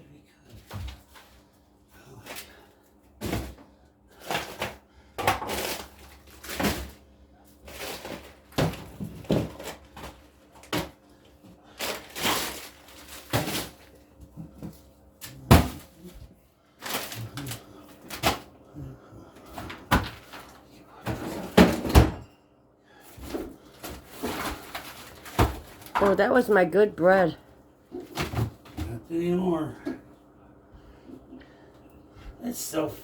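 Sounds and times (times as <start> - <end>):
clunks and knocks of packages: 2.2 - 7.0, 7.6 - 11.0, 11.6 - 18.5, 19.4 - 22.4, 23.0 - 26.2, 27.9 - 29.0.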